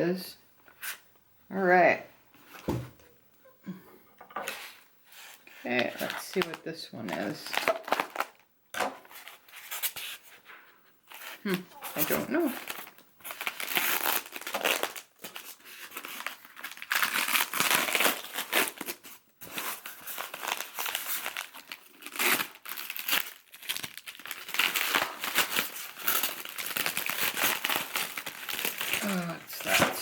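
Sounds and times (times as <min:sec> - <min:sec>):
packing material crinkling: 0:04.4 - 0:08.4, 0:11.1 - 0:30.0.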